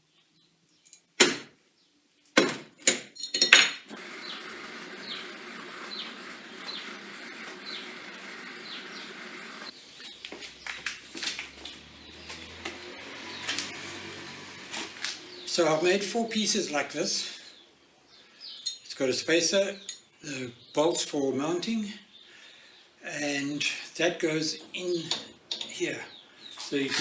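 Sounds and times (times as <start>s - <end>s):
sharp knocks: 1.2s - 1.5s
steel parts clanking: 3.2s - 3.8s, 24.6s - 25.8s.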